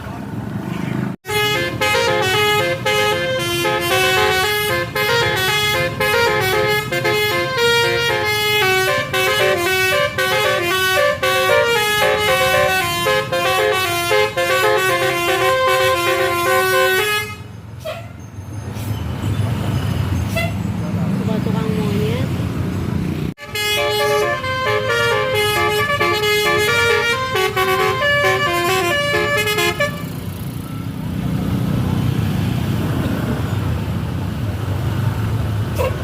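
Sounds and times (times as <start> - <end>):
bus horn playing melody: 1.2 - 18.1, 23.4 - 30.4.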